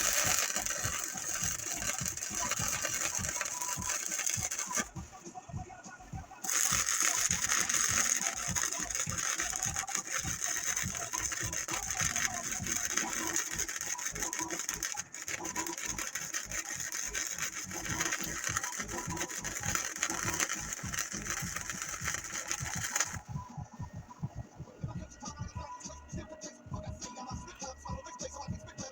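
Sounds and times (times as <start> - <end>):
welding arc crackling: 0.0 - 5.2, 6.3 - 23.3.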